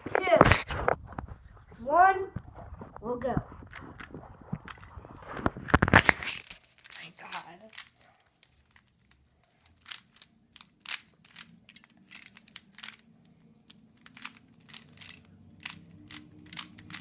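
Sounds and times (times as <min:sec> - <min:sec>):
plastic puzzle cube clicking: 0:03.7 - 0:17.0.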